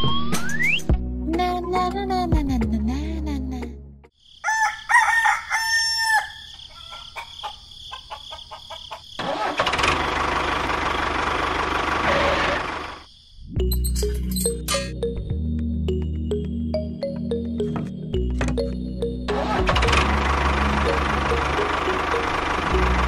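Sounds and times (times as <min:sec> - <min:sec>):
rooster crowing: 0:04.4 - 0:09.2.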